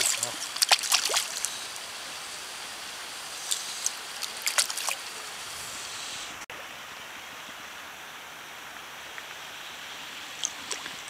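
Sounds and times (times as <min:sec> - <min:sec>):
short water splashes: 0:00.0 - 0:01.5, 0:03.5 - 0:05.1
water sloshing: 0:00.0 - 0:01.7, 0:03.8 - 0:05.1.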